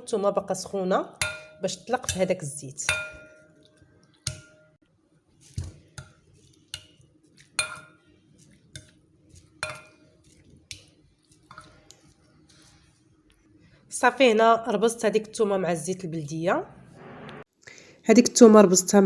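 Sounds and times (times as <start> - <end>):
fork mashing garlic: 0.4 - 4.7, 5.4 - 13.6
fork clinking against bowl: 1.2 - 4.7, 7.6 - 8.0, 8.8 - 10.1, 10.7 - 11.8.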